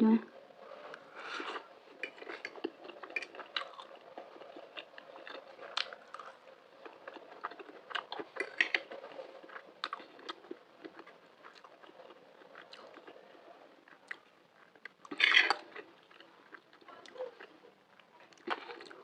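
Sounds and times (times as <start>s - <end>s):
person chewing food: 0.9s - 17.5s, 18.3s - 19.0s.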